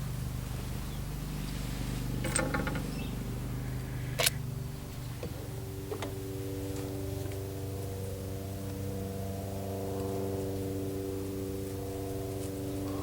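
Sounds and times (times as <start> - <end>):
steady low hum: 0.0 - 13.0
metal parts clicking and rattling: 2.2 - 3.0.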